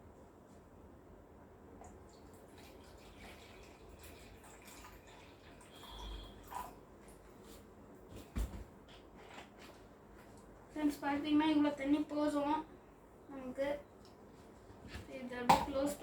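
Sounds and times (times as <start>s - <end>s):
water trickling and dripping: 1.8s - 7.3s.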